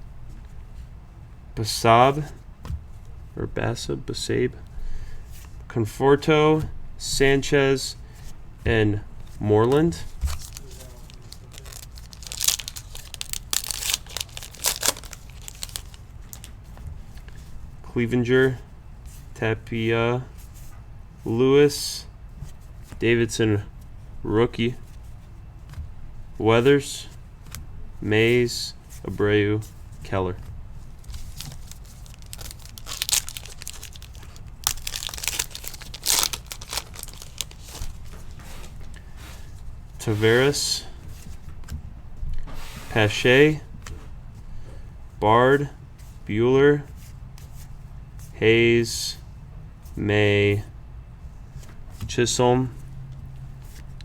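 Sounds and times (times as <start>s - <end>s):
foil wrapper crinkling: 10.1s - 16.6s, 31.0s - 39.0s
sharp crackly bursts: 10.4s - 16.5s, 31.0s - 38.1s.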